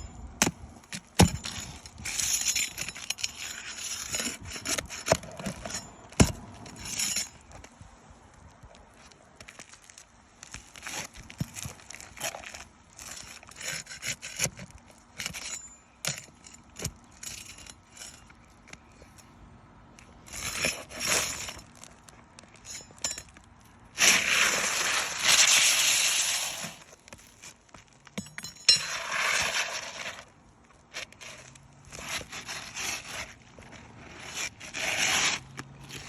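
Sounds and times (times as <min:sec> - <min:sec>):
tools clinking on shingles: 0:00.0 - 0:07.6, 0:13.0 - 0:19.0, 0:22.4 - 0:23.8, 0:28.0 - 0:29.6
loud scraping rub: 0:24.0 - 0:27.0, 0:28.7 - 0:30.3, 0:31.0 - 0:36.0.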